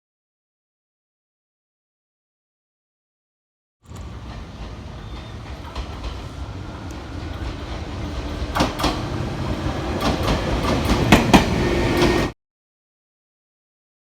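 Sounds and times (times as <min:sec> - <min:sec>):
sharp train clacks: 0:03.8 - 0:12.4
train rumbling: 0:03.8 - 0:12.4.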